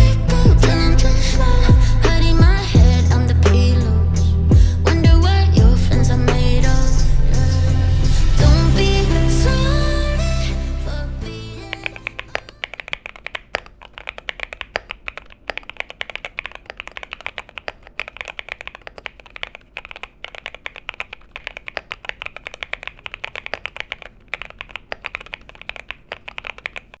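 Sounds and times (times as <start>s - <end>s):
mechanical keyboard key clicks: 11.8s - 27.0s.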